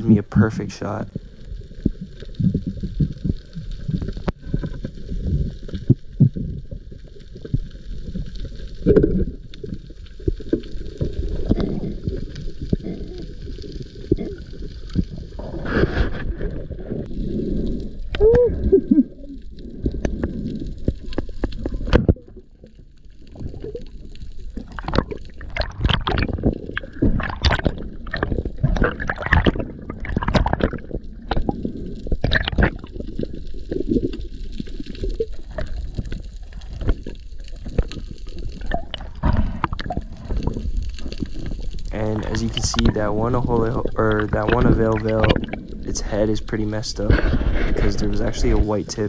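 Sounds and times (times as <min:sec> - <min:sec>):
water gurgling and bubbling: 0:00.0 - 0:49.0
underwater clicks and knocks: 0:19.9 - 0:22.5, 0:24.6 - 0:32.9, 0:42.2 - 0:45.7.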